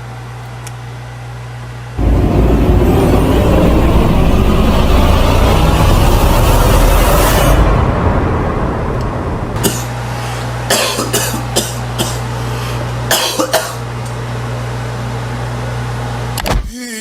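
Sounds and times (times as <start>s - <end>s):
steady low hum: 0.0s - 16.7s
person coughing: 9.6s - 9.9s, 10.7s - 13.8s.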